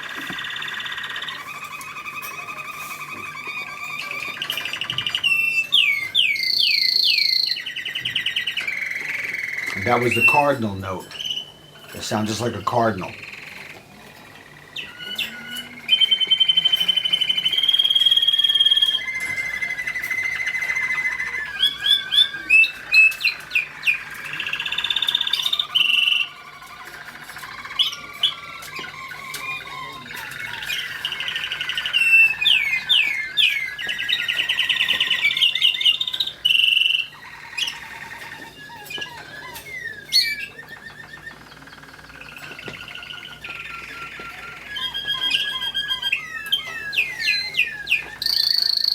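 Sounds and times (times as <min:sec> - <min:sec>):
canaries singing trills: 0:00.0 - 0:48.9.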